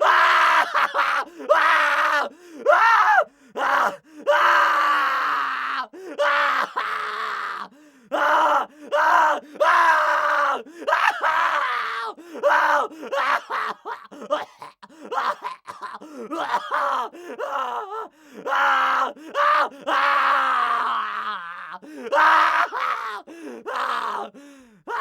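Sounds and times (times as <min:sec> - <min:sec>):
man crying out in pain: 0:12.7 - 0:17.6.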